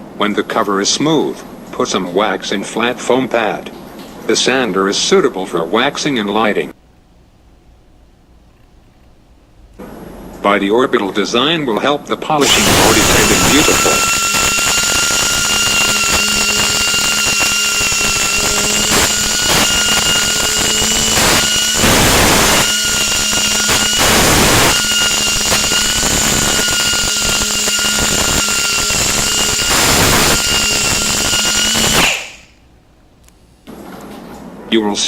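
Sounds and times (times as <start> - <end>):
pneumatic sander whine: 12.4 - 32.6.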